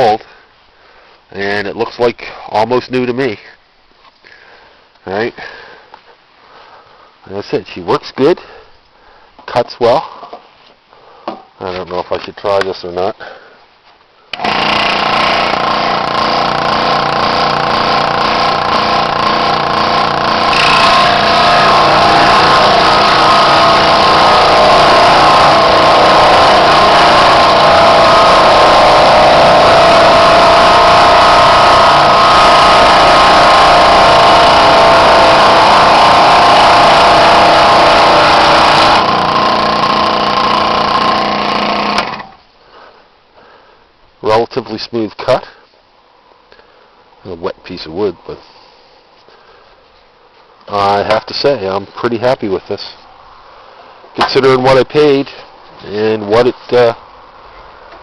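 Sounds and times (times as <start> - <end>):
saw blade cutting wood: 14.4 - 42.4
scroll saw running: 14.4 - 42.4.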